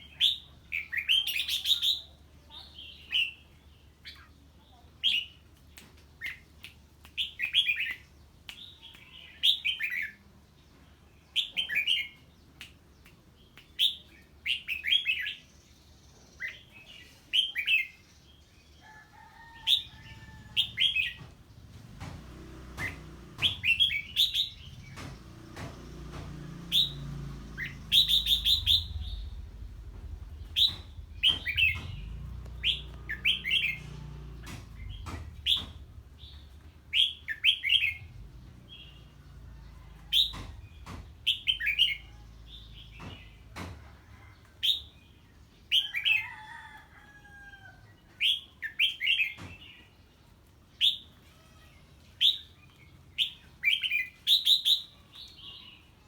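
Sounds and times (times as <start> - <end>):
low rumble: 19.8 - 43.6
bird chattering song: 22.8 - 25.7, 26.7 - 43.4, 52.1 - 56.0.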